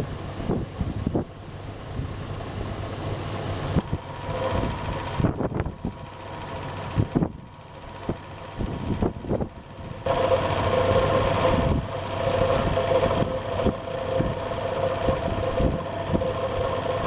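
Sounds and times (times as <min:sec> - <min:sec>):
car engine idling: 0:00.0 - 0:17.0
wind buffeting microphone: 0:00.4 - 0:02.2, 0:03.8 - 0:06.1, 0:08.0 - 0:17.0.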